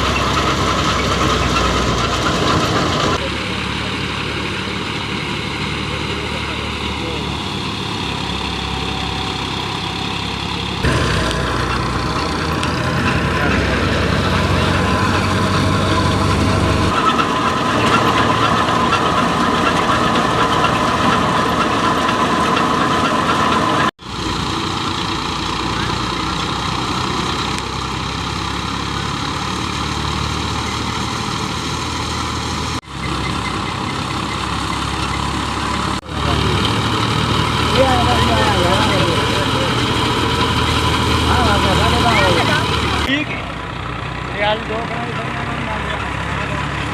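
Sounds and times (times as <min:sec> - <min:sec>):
low engine hum: 0:00.0 - 0:46.9
thresher mechanical drone: 0:00.0 - 0:46.9.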